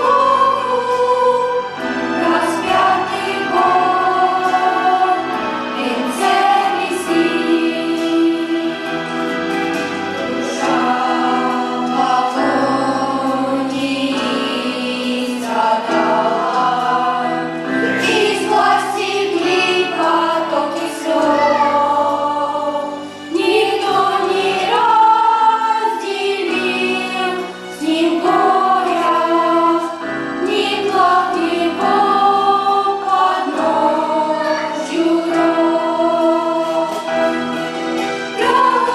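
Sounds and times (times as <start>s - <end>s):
choir singing a hymn: 0.0s - 38.9s.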